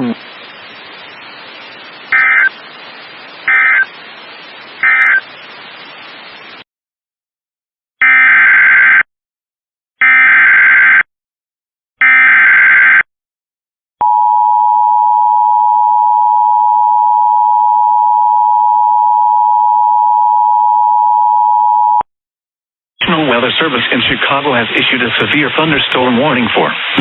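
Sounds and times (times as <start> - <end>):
screeching data bursts: 0.0 - 2.6, 3.4 - 5.3.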